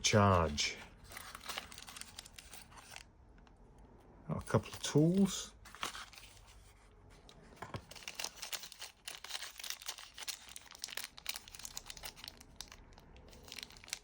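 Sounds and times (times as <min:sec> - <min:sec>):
plastic packaging crinkling: 0:00.1 - 0:03.1, 0:07.7 - 0:14.0.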